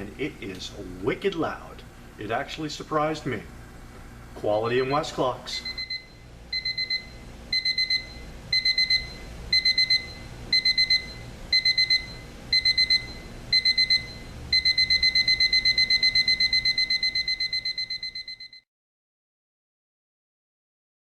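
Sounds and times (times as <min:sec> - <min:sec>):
alarm clock beeping: 0:04.8 - 0:18.6.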